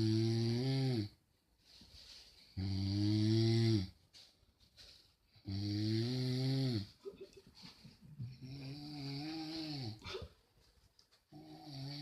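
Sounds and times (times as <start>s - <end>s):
person snoring: 0.0s - 1.2s, 2.6s - 3.9s, 5.5s - 6.9s, 8.4s - 10.0s, 11.4s - 12.0s.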